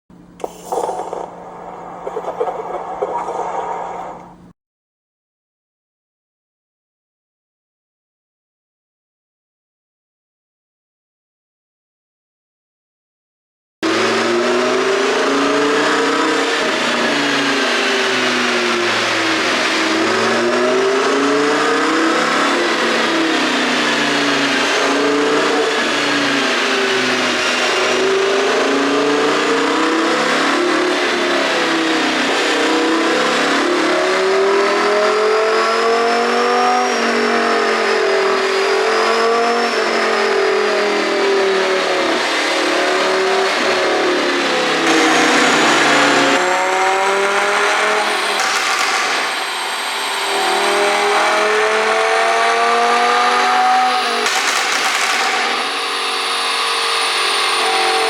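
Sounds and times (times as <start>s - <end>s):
car engine revving: 13.8s - 58.0s.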